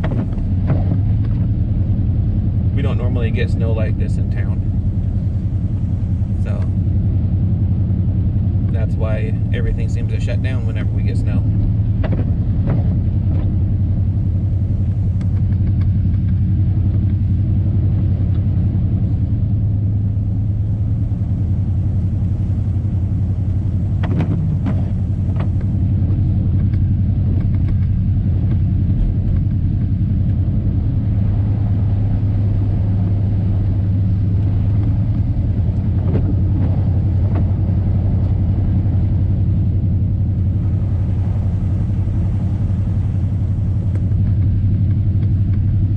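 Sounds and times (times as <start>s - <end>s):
engine and road drone in cab: 0.0s - 45.9s.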